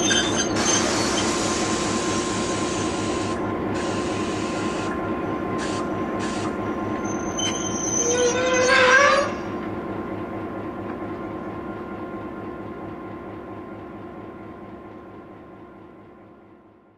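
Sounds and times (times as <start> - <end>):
locomotive running: 0.0 - 16.3.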